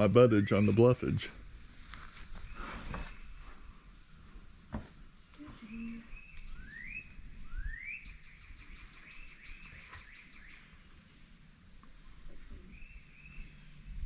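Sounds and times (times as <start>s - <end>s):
bird whistles: 5.7s - 10.6s.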